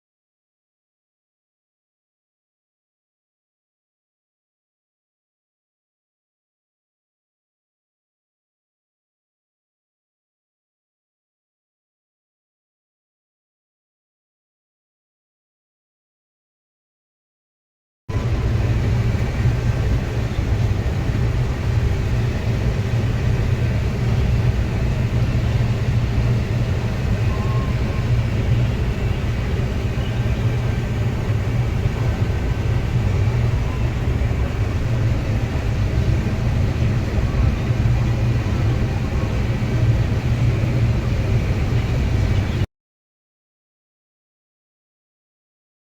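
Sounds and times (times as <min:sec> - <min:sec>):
combine harvester rumbling: 0:18.1 - 0:42.7.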